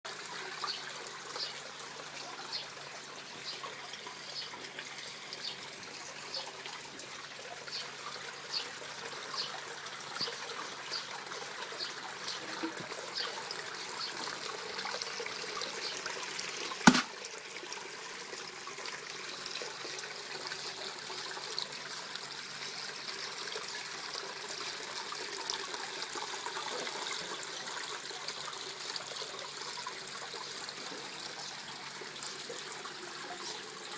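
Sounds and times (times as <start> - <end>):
small waterfall splashing: 0.1 - 33.9
sharp click: 16.9 - 17.1.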